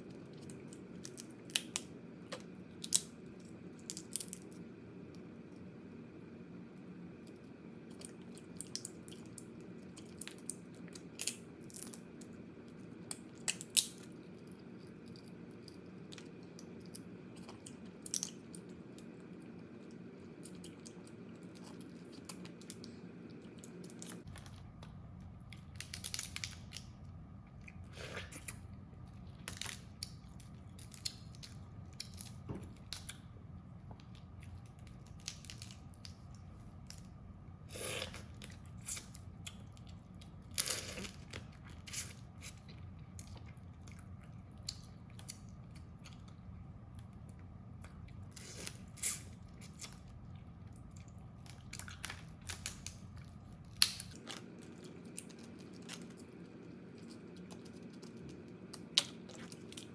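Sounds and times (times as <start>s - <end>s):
low background hum: 0.0s - 59.9s
crab shell cracking and crunching: 0.5s - 3.2s, 8.0s - 19.1s, 23.6s - 27.0s, 34.0s - 37.2s, 50.8s - 59.9s
chewing: 37.8s - 59.9s.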